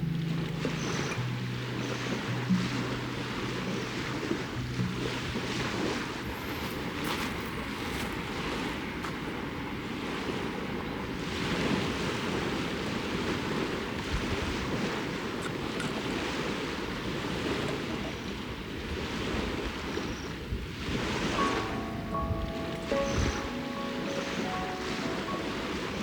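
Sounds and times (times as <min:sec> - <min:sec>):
small waves washing ashore: 0:00.0 - 0:26.0
wind buffeting microphone: 0:00.0 - 0:26.0.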